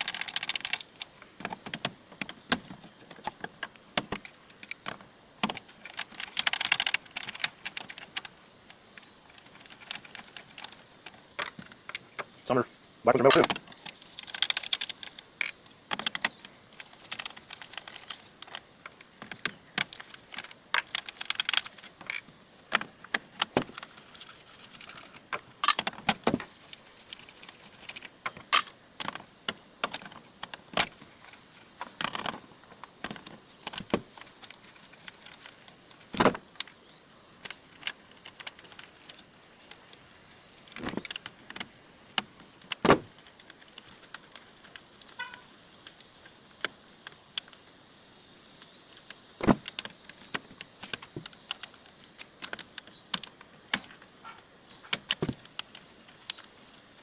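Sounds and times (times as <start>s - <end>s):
metal parts and tools clinking: 23.8s - 26.0s.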